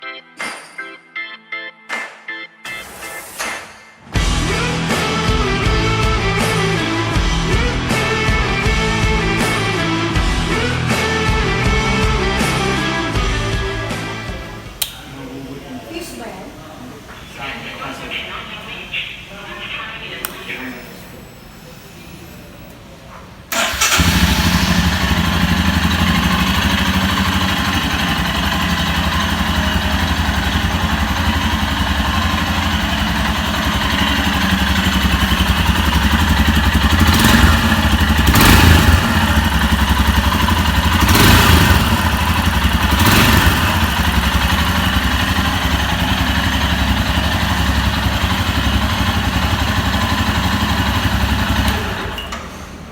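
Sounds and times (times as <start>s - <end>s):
motorcycle engine idling: 23.5s - 52.2s
motorcycle engine starting: 23.5s - 52.9s.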